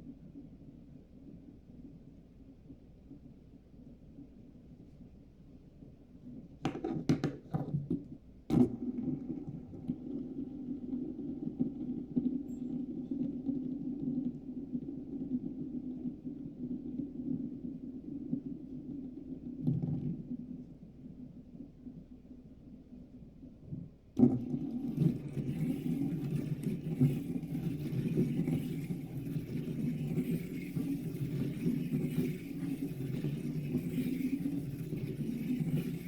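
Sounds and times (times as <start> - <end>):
fidget spinner clicking: 24.2 - 36.0
fidget spinner whirring: 24.2 - 36.0.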